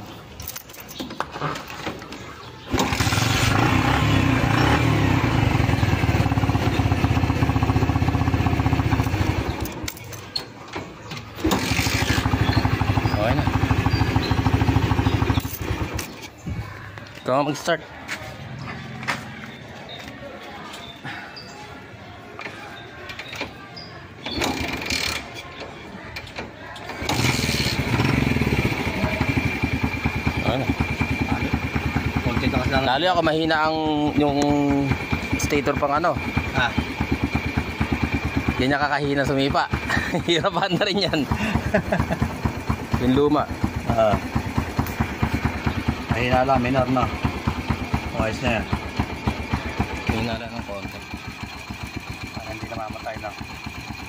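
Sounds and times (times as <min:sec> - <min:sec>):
motorcycle engine cranking: 0:00.2 - 0:16.4, 0:23.0 - 0:54.0
motorcycle engine running: 0:02.6 - 0:10.3, 0:11.3 - 0:17.2, 0:26.9 - 0:54.0.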